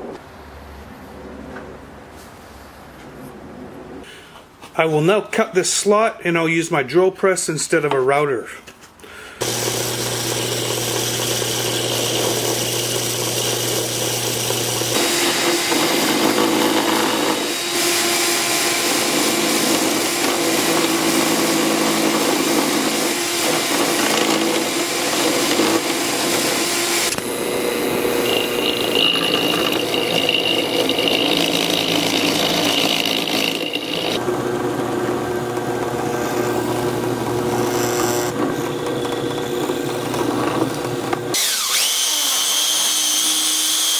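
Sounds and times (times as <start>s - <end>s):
bit cutting workpiece: 9.4s - 43.9s
drill press motor whine: 9.4s - 43.9s.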